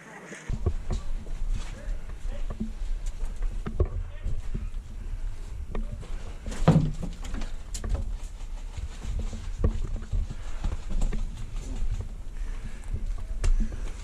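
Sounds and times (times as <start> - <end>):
low rumble: 0.5 - 14.0.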